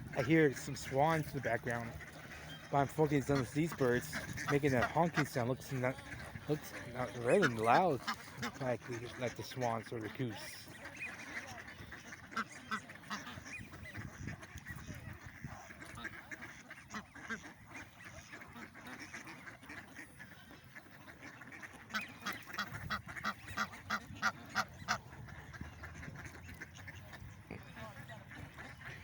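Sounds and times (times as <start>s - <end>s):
waterbirds honking: 0.0s - 29.0s.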